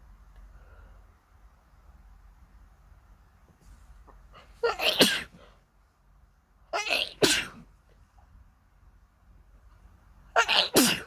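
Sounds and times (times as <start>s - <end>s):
person sneezing: 4.5s - 5.5s, 6.8s - 7.7s, 10.4s - 11.0s.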